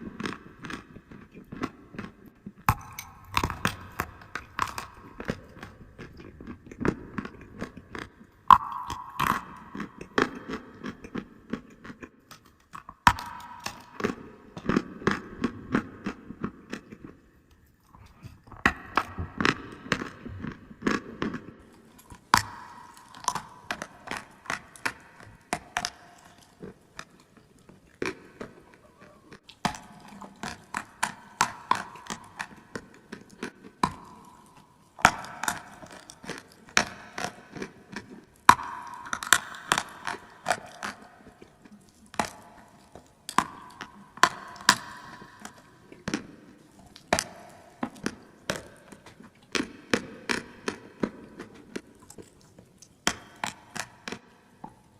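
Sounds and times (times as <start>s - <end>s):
crunching and chewing clay: 0.0s - 54.9s.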